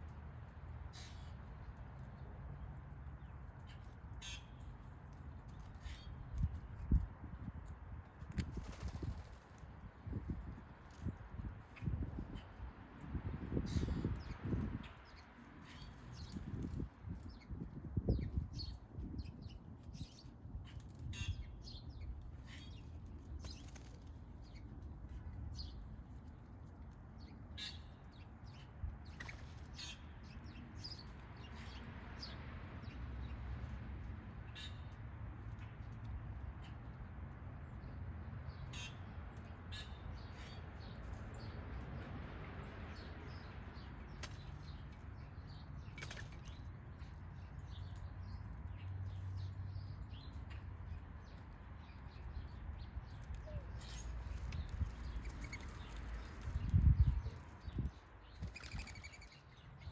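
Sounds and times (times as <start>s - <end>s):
birds chirping: 44.1s - 59.9s.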